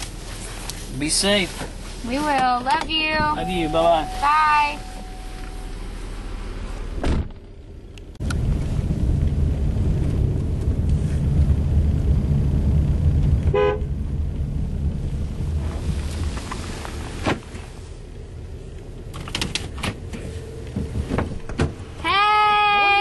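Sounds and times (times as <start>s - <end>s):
car pulling away: 0.0s - 22.1s
car horn toot: 3.1s - 6.0s, 13.5s - 13.9s.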